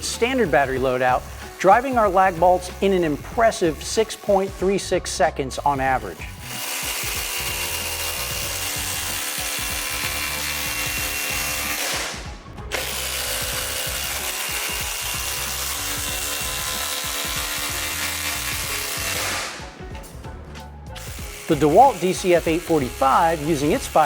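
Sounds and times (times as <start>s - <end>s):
impact driver rattling: 6.4s - 19.8s.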